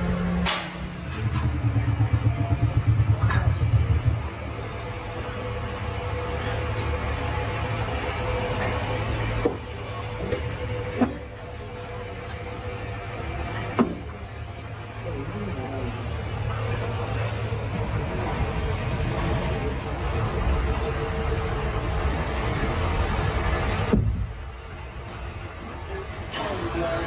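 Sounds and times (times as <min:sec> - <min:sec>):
low mechanical rumble: 0:00.0 - 0:27.0.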